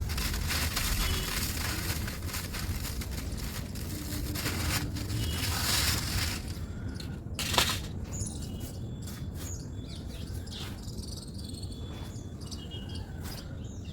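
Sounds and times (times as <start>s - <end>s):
powdery material crumbling: 0.0s - 6.6s.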